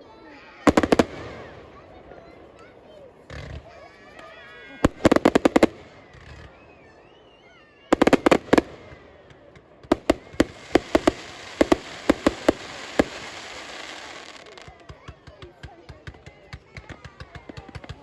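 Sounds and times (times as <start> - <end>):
fireworks crackling hiss: 0.1 - 6.8, 7.9 - 15.1
fireworks sharp bangs: 0.3 - 7.3, 7.9 - 18.0.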